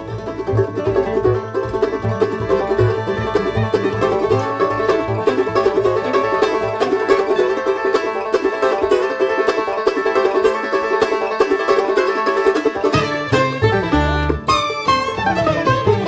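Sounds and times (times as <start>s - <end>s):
bass part: 0.0s - 7.6s, 12.7s - 16.0s
bluegrass banjo music: 0.0s - 16.0s.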